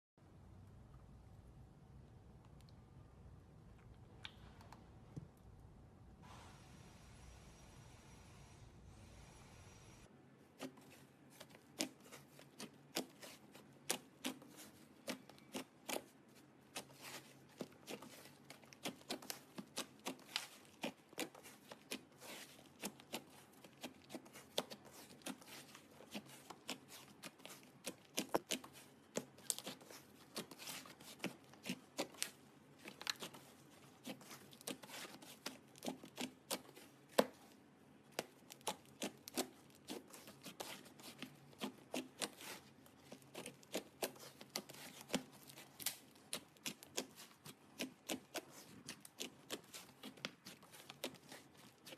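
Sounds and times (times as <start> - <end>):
slime squished by hand: 10.5 - 51.9.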